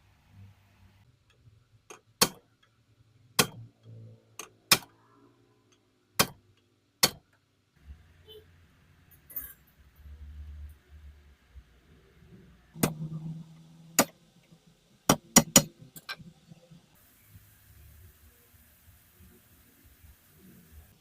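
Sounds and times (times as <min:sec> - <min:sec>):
sharp hard clicks and knocks: 0:01.9 - 0:02.7, 0:03.4 - 0:03.7, 0:04.4 - 0:04.9, 0:06.2 - 0:07.4, 0:12.8 - 0:13.1, 0:14.0 - 0:16.4.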